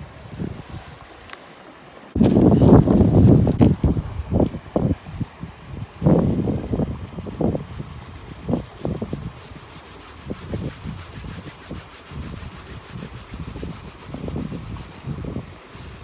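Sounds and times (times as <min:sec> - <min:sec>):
scraping and rubbing strokes: 0:07.2 - 0:16.0.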